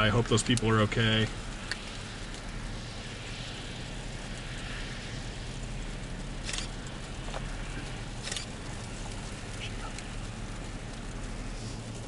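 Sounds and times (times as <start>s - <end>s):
car engine hum: 0.0s - 12.0s
constant hiss: 0.0s - 12.0s.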